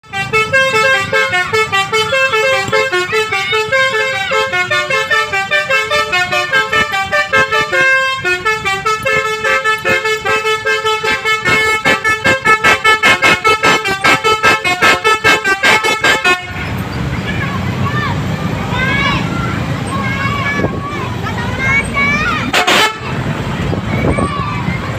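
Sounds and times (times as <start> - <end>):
multi-tone bus horn tune: 0.0 - 17.5, 22.4 - 23.3.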